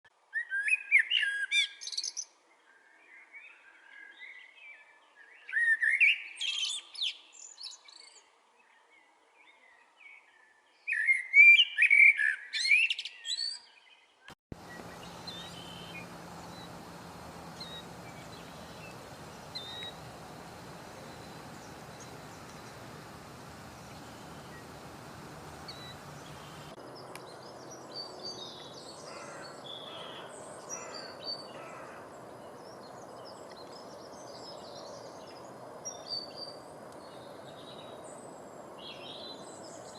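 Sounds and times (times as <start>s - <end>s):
outdoor hiss: 14.5s - 26.8s
faint bird chirps: 14.6s - 38.2s
songbirds warbling: 14.6s - 39.9s.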